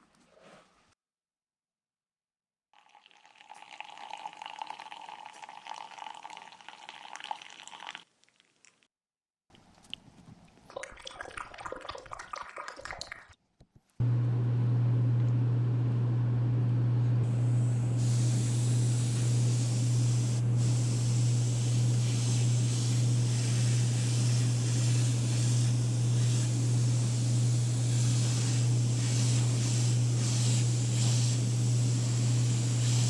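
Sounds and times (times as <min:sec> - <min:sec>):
electric machine humming: 0:14.0 - 0:33.0
high hiss: 0:17.3 - 0:33.0.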